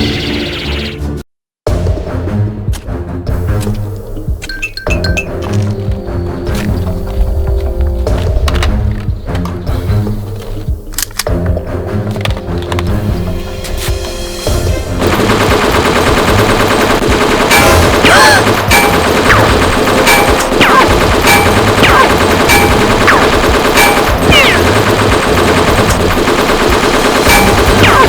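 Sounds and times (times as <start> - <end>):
pulsing music: 0.0 - 28.0
rapid gunfire: 15.0 - 28.0.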